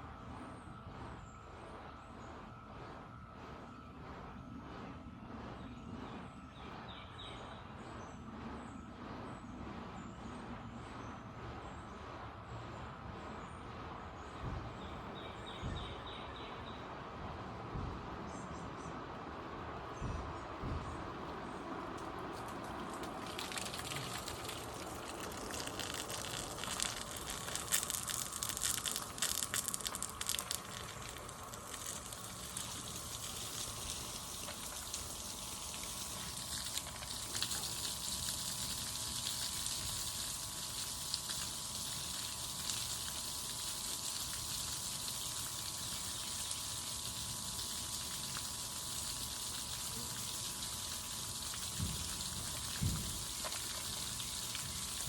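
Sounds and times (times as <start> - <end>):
splashing water hiss: 19.4 - 55.0
crackling spatter: 21.0 - 55.0.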